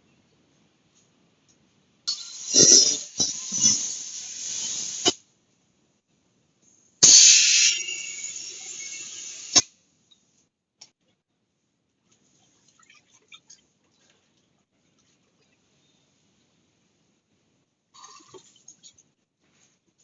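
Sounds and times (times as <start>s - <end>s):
compressed air hissing: 2.1s - 5.2s, 7.0s - 9.7s.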